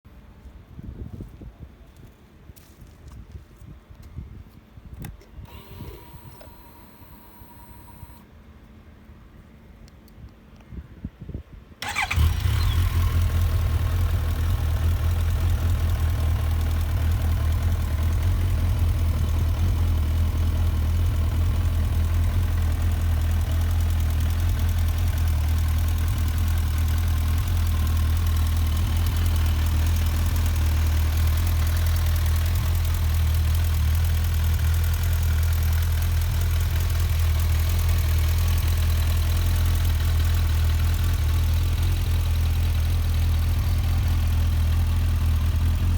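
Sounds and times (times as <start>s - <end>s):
motorcycle engine idling: 11.8s - 45.9s.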